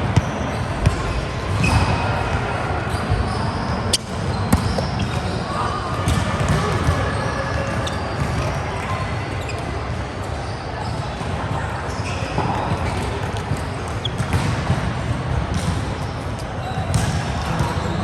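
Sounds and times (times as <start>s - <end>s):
background voices and movement: 0.0s - 18.0s
volleyball impacts: 14.1s - 16.0s, 16.9s - 17.8s.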